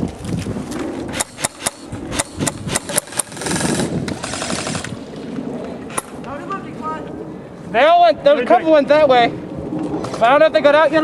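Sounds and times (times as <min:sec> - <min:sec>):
airsoft gun shots: 0:01.1 - 0:04.9.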